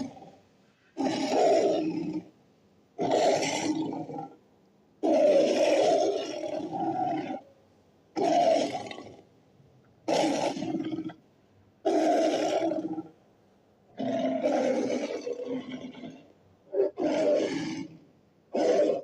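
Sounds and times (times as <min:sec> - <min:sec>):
big cat roars: 0:01.0 - 0:02.3, 0:03.0 - 0:04.4, 0:05.0 - 0:07.4, 0:08.2 - 0:09.2, 0:10.1 - 0:11.2, 0:11.8 - 0:13.1, 0:14.0 - 0:19.0.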